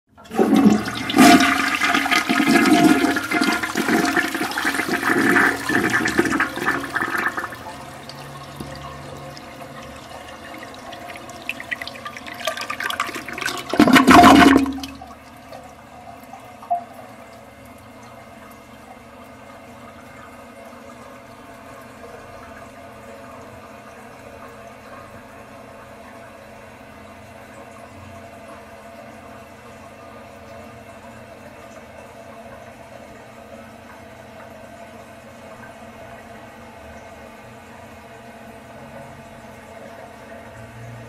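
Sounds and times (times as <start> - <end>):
toilet flushing: 0.1 - 26.7
faint running water: 0.2 - 41.0.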